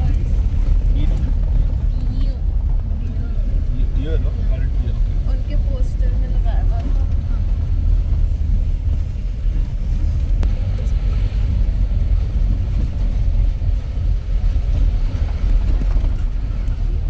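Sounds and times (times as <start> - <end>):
jeep driving on rough track: 0.0 - 17.0.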